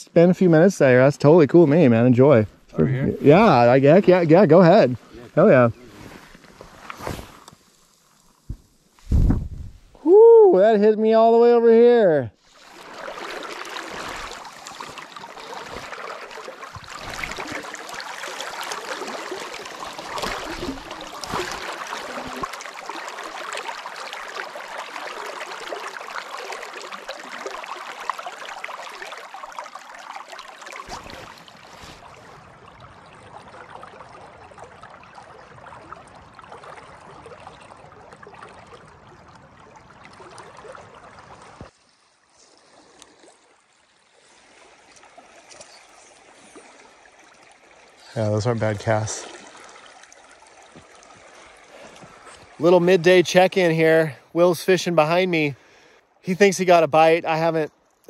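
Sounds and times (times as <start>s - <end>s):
river water rushing: 12.4s - 32.4s.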